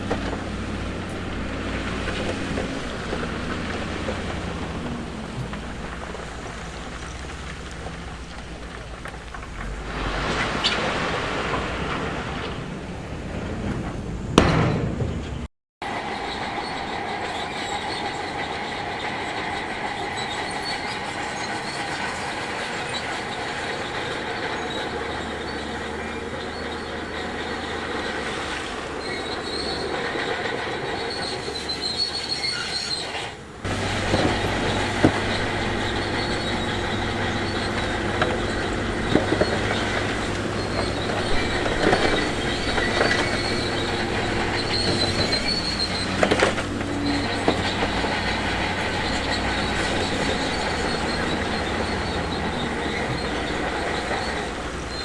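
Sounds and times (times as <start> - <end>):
bulldozer diesel engine running: 0.0 - 55.0
steel tracks squealing and clanking: 0.0 - 55.0.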